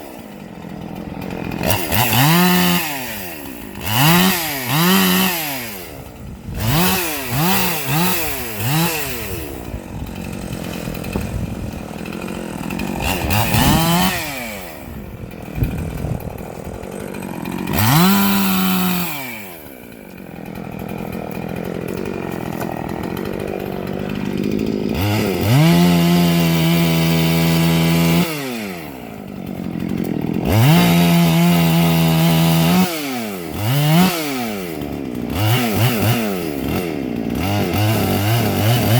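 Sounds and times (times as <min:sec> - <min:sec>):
chainsaw revving: 0:00.0 - 0:38.9.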